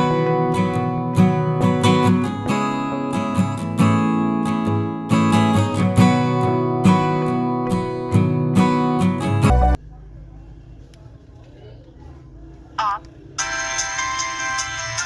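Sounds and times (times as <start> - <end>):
strummed acoustic guitar: 0.0 - 9.8.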